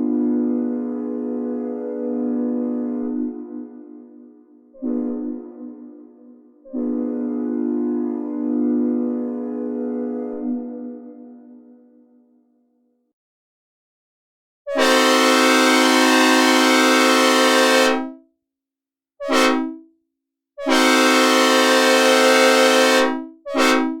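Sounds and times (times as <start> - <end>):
synthesized train air horn blasts: 4.8 - 9.9, 14.7 - 18.1, 19.2 - 19.8, 20.6 - 24.0.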